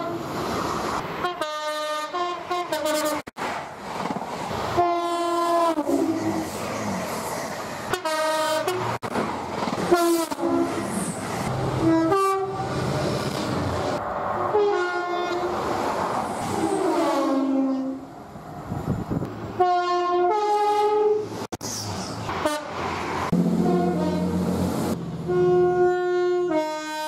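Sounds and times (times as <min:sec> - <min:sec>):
trains running: 0:00.0 - 0:01.5, 0:03.4 - 0:19.6, 0:21.3 - 0:27.0
two-tone train horn blasts: 0:01.2 - 0:03.3, 0:04.8 - 0:06.2, 0:07.9 - 0:09.0, 0:09.9 - 0:10.9, 0:11.8 - 0:12.7, 0:14.5 - 0:15.5, 0:16.8 - 0:18.0, 0:19.6 - 0:21.3, 0:22.4 - 0:22.7, 0:23.4 - 0:27.0.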